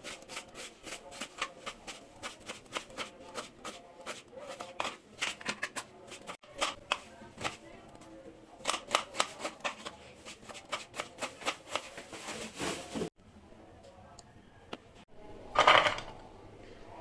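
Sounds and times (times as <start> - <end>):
knife chopping on cutting board: 8.6 - 11.9.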